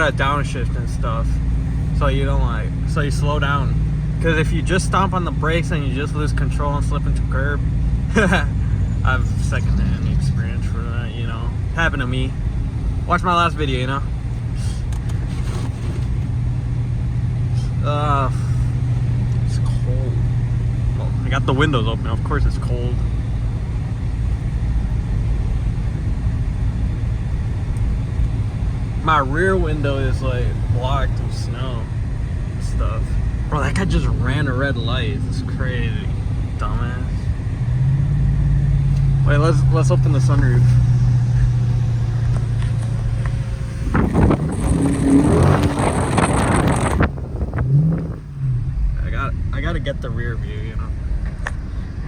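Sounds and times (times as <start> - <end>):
car engine rumbling: 0.0 - 52.0
road noise: 0.0 - 52.0
wind noise: 38.6 - 49.6.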